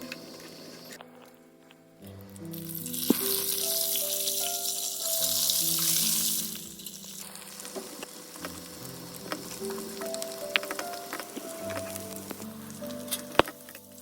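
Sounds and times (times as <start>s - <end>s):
food sizzling in a pan: 0.0s - 1.0s, 2.2s - 14.0s
background music with held notes: 0.0s - 14.0s.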